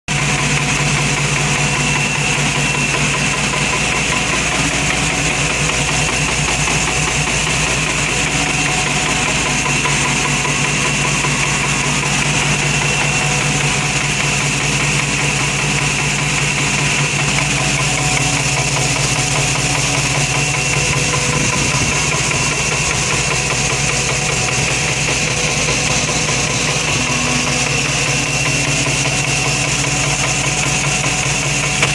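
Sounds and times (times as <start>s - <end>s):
engine idling with ticking: 0.1s - 31.9s.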